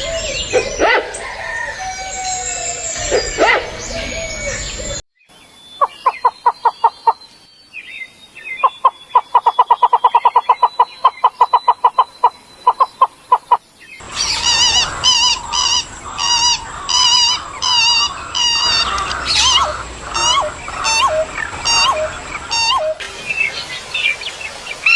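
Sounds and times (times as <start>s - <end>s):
bird rapid low notes: 0.0s - 5.0s, 14.0s - 24.9s
bird warbled phrase: 0.0s - 5.0s, 14.0s - 24.9s
background hiss: 0.0s - 5.6s, 13.6s - 24.9s.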